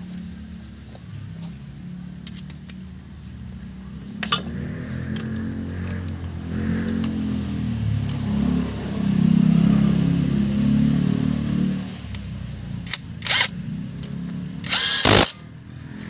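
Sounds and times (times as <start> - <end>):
vehicle engine running: 0.0 - 16.0
metallic clinks of tools: 4.2 - 6.1.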